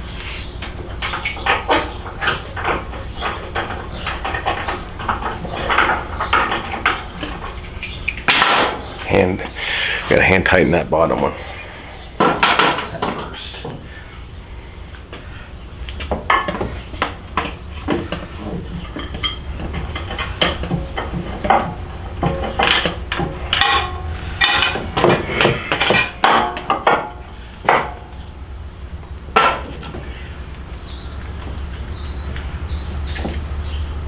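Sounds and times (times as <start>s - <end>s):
metal tools clinking and clanking: 0.0s - 9.3s, 12.2s - 13.8s, 16.3s - 28.4s.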